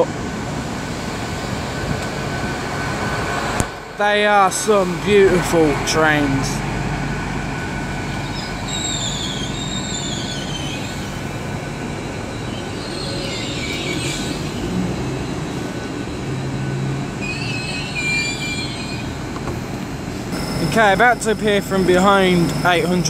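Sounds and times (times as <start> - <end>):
train running hum: 0.0 - 23.0
train wheels squealing: 7.7 - 19.4.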